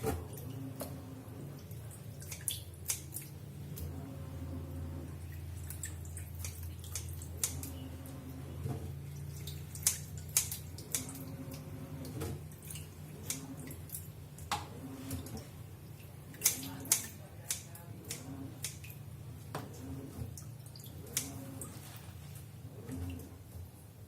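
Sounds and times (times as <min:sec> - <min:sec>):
water dripping: 0:00.3 - 0:03.9, 0:05.1 - 0:08.3, 0:09.0 - 0:14.6, 0:15.2 - 0:19.5, 0:20.3 - 0:21.7.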